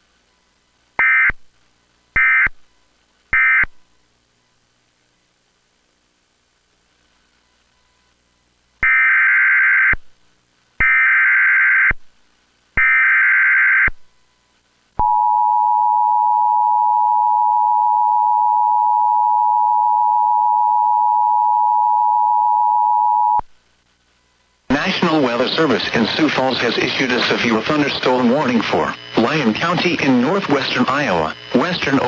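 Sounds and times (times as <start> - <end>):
two-tone attention signal: 15.0 - 23.4.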